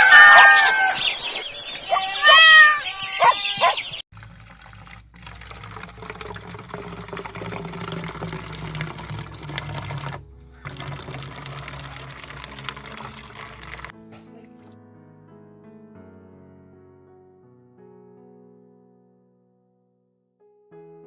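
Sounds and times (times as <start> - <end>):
rooster crowing: 0.0 - 3.8
liquid pouring and splashing: 4.1 - 13.9.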